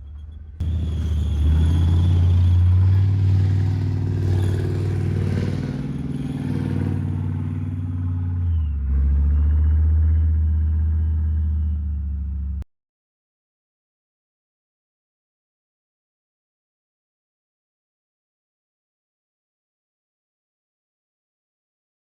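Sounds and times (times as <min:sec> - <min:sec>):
diesel engine low drone: 0:00.0 - 0:12.7.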